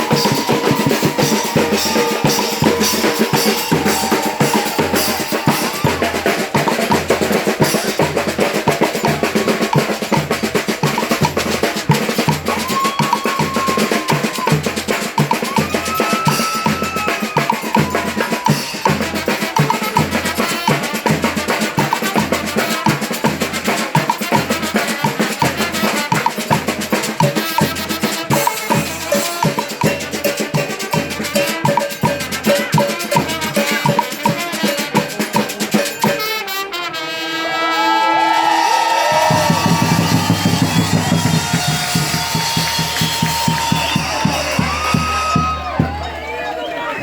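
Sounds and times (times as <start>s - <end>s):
brass horns playing: 0.0s - 9.8s, 18.0s - 35.4s, 36.0s - 46.9s
bass drums beating: 0.0s - 28.0s, 38.8s - 46.3s
rattling snare drum: 0.0s - 36.6s, 39.1s - 45.8s.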